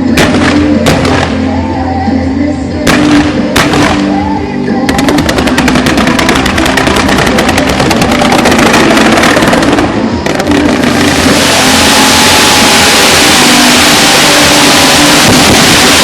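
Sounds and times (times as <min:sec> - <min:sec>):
fireworks bangs: 0:00.0 - 0:01.7, 0:02.8 - 0:16.0
fireworks hissing crackle: 0:04.9 - 0:16.0.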